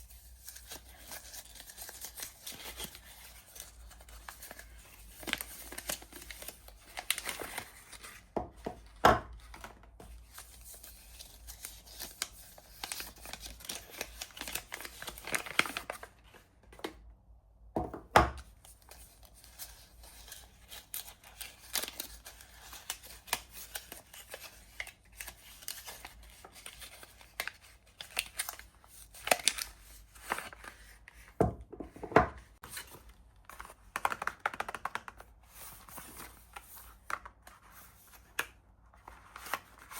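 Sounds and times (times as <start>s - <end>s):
wrapper tearing and crinkling: 11.4s - 16.1s.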